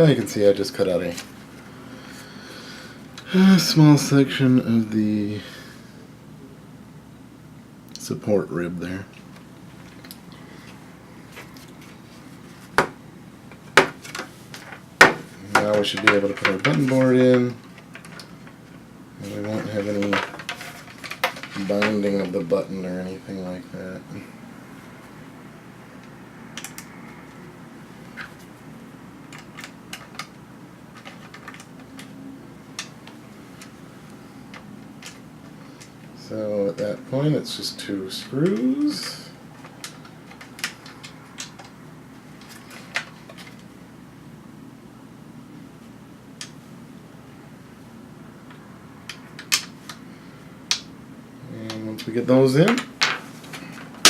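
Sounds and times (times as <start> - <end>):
steady low hum: 0.0 - 54.0
sharp clicks of small parts: 26.6 - 26.9.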